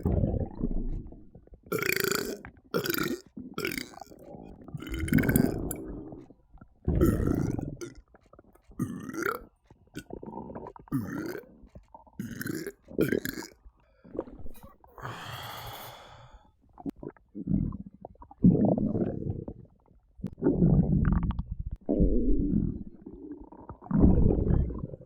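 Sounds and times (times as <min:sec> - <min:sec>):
person belching: 0:01.7 - 0:04.2, 0:04.8 - 0:05.8, 0:07.0 - 0:08.0, 0:08.8 - 0:09.4, 0:10.9 - 0:11.5, 0:12.2 - 0:13.6
breathy exhale: 0:14.9 - 0:16.6.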